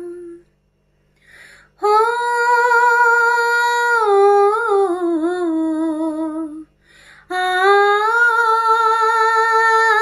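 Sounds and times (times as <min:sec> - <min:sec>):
woman singing unaccompanied: 0:00.0 - 0:00.5, 0:01.8 - 0:10.0
woman breathing in: 0:01.1 - 0:01.8, 0:06.8 - 0:07.3.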